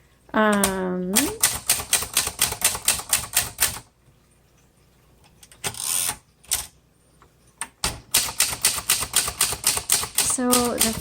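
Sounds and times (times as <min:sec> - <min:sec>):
typewriter keystrokes: 0:00.5 - 0:03.8, 0:07.8 - 0:11.0.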